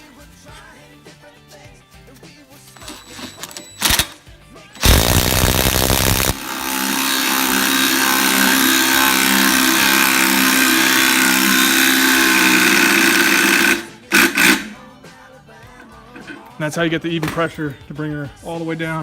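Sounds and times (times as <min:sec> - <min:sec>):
power tool whining: 0:04.8 - 0:14.8.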